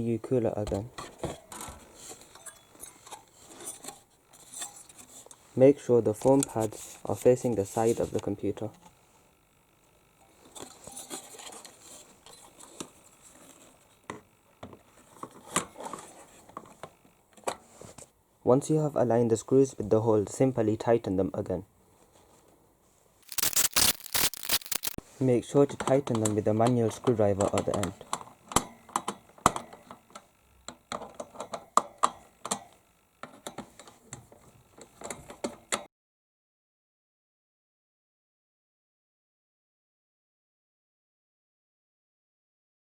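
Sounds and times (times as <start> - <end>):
screwdriver clicking on screws: 23.3 - 25.0.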